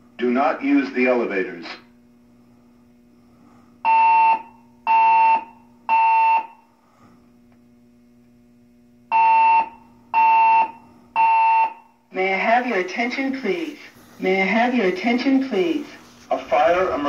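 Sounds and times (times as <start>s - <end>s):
fire alarm buzzy tones: 3.8s - 6.8s, 8.8s - 13.8s.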